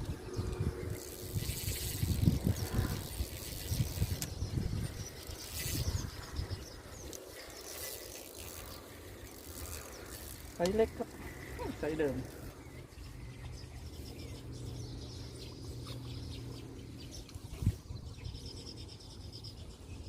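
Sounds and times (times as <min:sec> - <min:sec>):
wind on microphone: 0:00.0 - 0:07.2, 0:17.3 - 0:18.5
fishing reel clicking: 0:00.5 - 0:12.6.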